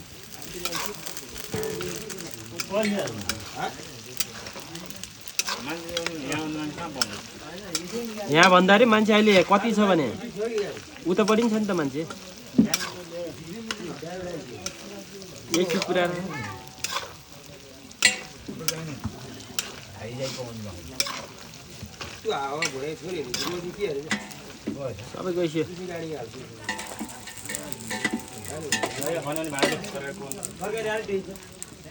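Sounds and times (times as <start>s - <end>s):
meat sizzling in a pan: 0.0s - 31.9s
metal spoon scraping a pan: 0.4s - 30.6s
spatula clicking against pan: 4.2s - 8.7s, 10.6s - 13.0s, 26.6s - 30.0s.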